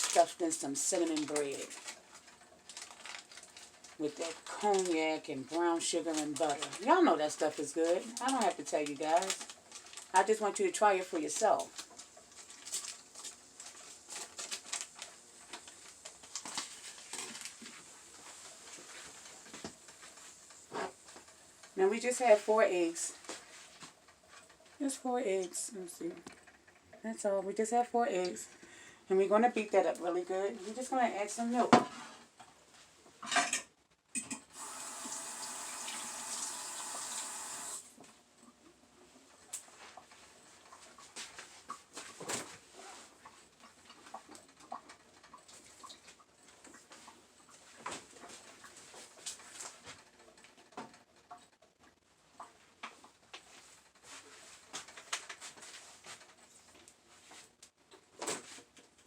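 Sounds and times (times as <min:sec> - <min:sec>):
liquid pouring: 0:34.6 - 0:37.8.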